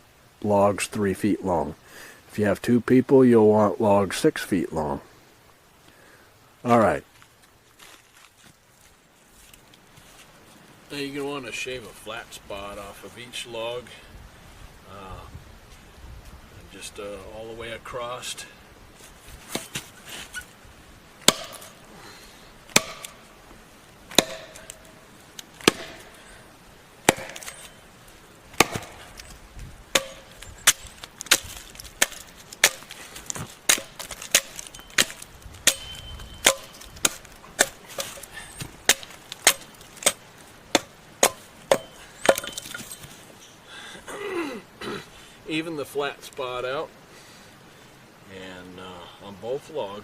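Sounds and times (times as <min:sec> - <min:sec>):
axe chopping wood: 0:21.2 - 0:21.8, 0:22.7 - 0:23.2, 0:24.1 - 0:24.9, 0:25.6 - 0:26.2, 0:27.0 - 0:27.7, 0:28.5 - 0:29.2, 0:29.9 - 0:43.0.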